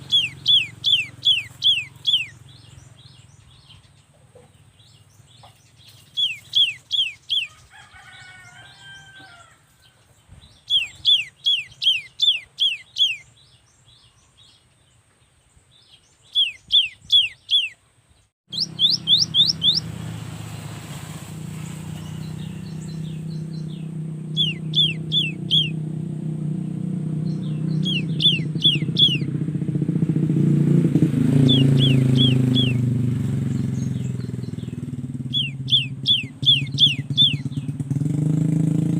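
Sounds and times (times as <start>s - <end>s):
motor engine running: 0.0s - 3.4s, 18.5s - 38.9s
bird singing whistled notes: 0.0s - 3.8s, 5.9s - 7.6s, 10.4s - 14.6s, 15.8s - 17.8s, 18.5s - 20.2s, 22.0s - 25.9s, 27.2s - 29.4s, 31.3s - 32.9s, 33.5s - 37.8s.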